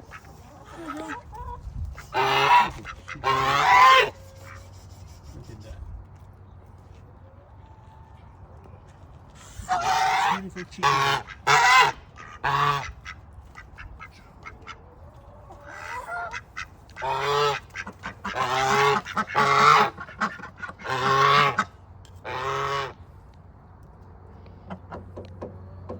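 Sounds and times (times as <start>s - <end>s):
poultry calling: 0.0s - 4.8s, 9.5s - 23.0s.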